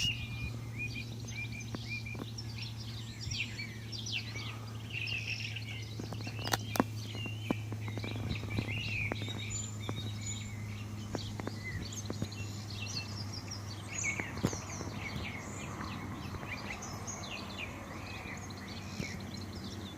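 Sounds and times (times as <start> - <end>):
small birds chirping: 0.0 - 19.9
steady low hum: 0.0 - 19.9
sharp clicks: 6.0 - 10.1.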